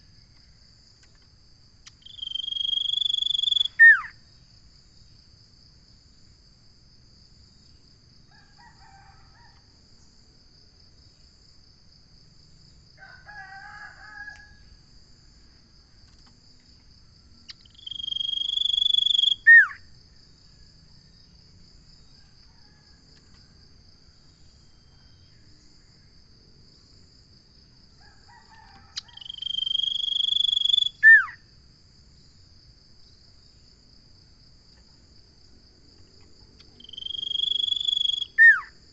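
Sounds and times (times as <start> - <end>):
pulsing insect trill: 0.0 - 38.9
bird whistling song: 2.1 - 4.2, 17.5 - 19.8, 29.0 - 31.4, 36.8 - 38.7.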